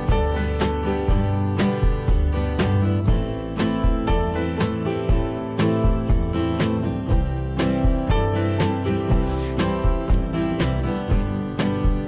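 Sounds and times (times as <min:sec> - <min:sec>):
strummed guitar music with beat: 0:00.0 - 0:12.0.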